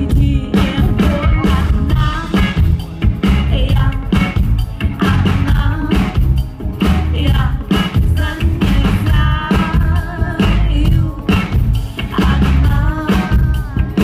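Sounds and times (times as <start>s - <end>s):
live pop band playing: 0.0s - 14.0s
woman singing lead vocal: 0.0s - 14.0s.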